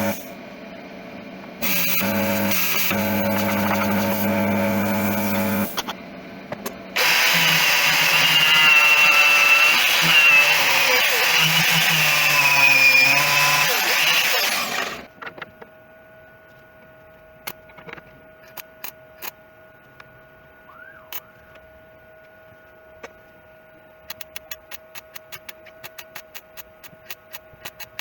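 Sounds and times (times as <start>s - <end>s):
angle grinder grinding steel: 7.0s - 15.1s.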